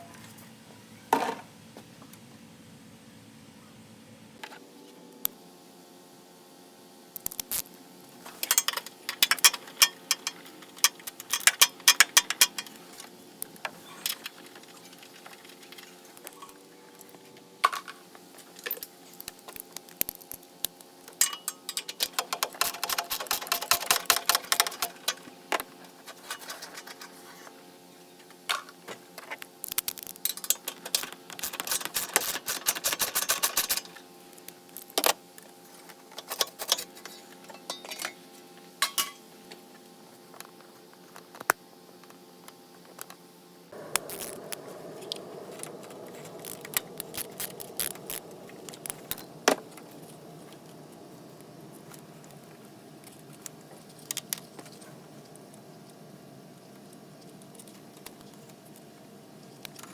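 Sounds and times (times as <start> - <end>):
ratchet wrench clicking: 22.0 - 24.8, 29.6 - 33.8, 44.0 - 44.5, 46.4 - 49.2.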